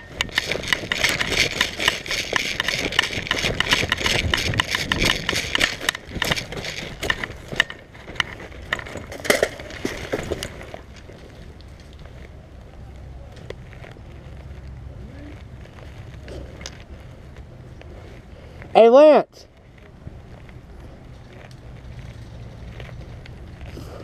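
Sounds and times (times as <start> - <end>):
irregular clicks: 0.0 - 9.5
scraping and rustling: 0.0 - 18.7, 19.5 - 24.0.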